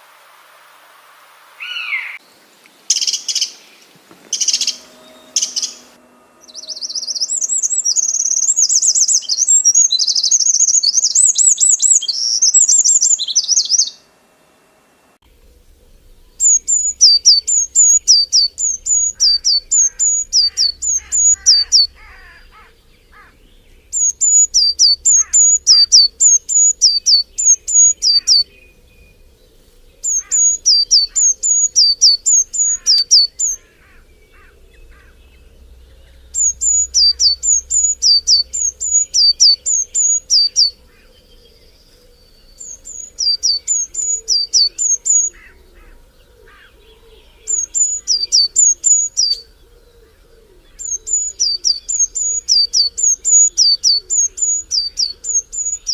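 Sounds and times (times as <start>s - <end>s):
faint bird chirps: 1.6s - 14.1s, 15.3s - 55.9s
songbird two-note phrase: 4.3s - 8.7s.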